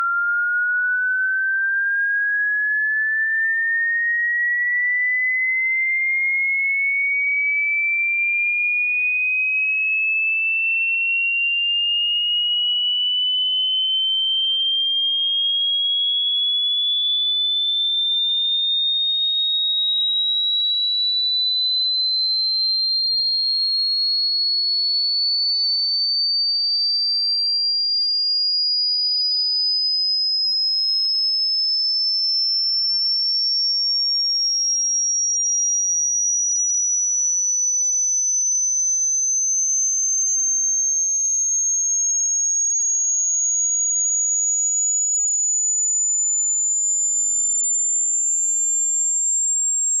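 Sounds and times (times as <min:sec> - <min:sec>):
electronic sine tone gliding upward: 0:37.1 - 0:39.9.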